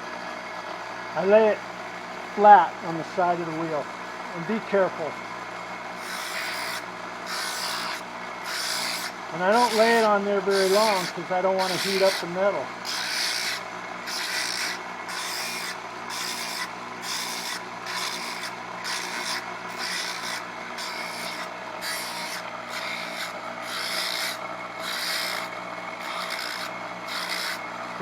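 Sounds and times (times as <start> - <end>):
bench grinder motor hum: 3.4 - 28.0
steel blade rasping on grinding wheel: 5.9 - 28.0.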